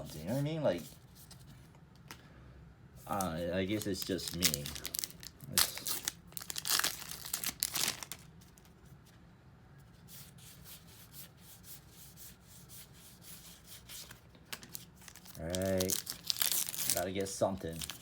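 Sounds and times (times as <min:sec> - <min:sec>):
rustling of wrapper and cards: 0:03.0 - 0:09.2, 0:13.4 - 0:18.0
wrapper tearing and crinkling: 0:03.1 - 0:08.6, 0:14.6 - 0:18.0.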